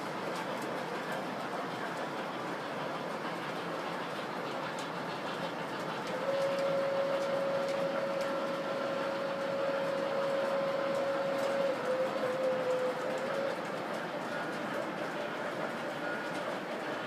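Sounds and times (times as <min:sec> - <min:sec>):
model trains running on track: 0:00.0 - 0:17.0
steady whine: 0:03.5 - 0:17.0.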